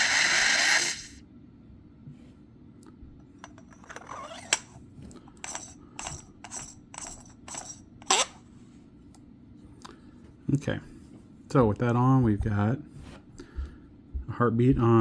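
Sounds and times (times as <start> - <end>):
small metallic clicks and clinks: 5.4 - 7.9.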